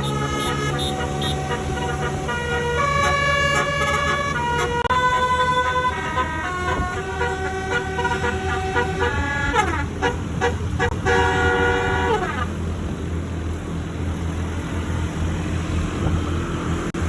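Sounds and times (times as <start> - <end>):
bus air horn playing a tune: 0.0 - 12.8
engine and road rumble: 0.0 - 17.0.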